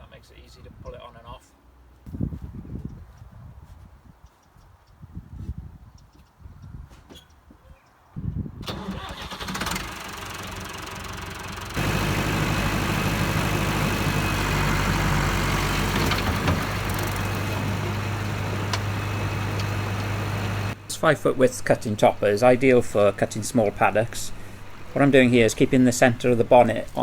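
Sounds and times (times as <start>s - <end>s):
tractor diesel engine: 8.6s - 27.0s.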